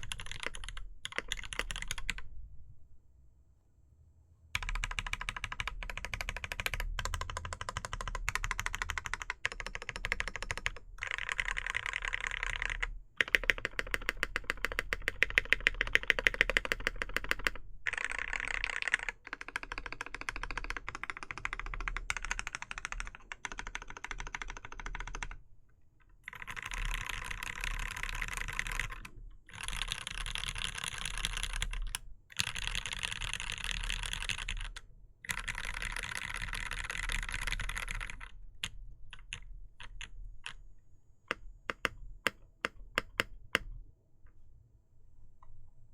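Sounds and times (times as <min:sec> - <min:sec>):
mechanical keyboard typing: 0:00.0 - 0:02.3, 0:04.6 - 0:25.4, 0:26.2 - 0:40.6, 0:41.3 - 0:43.8.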